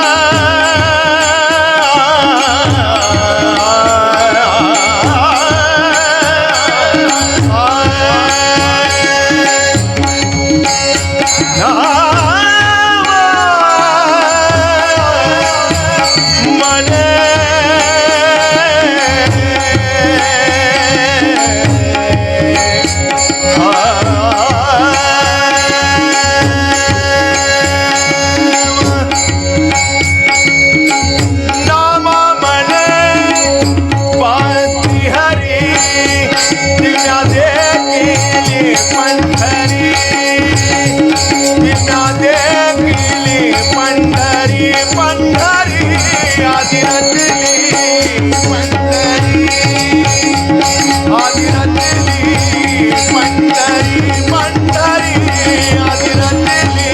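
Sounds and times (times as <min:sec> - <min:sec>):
tabla beating: 0:00.0 - 0:56.9.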